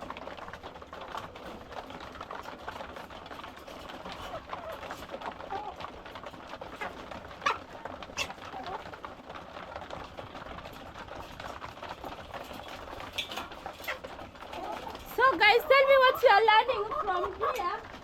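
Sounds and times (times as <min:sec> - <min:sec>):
hens clucking: 0:00.0 - 0:18.0.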